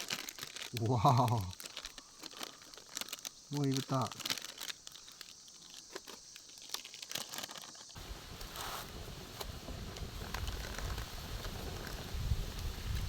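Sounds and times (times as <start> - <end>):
plastic packet crinkling: 0.0 - 8.0.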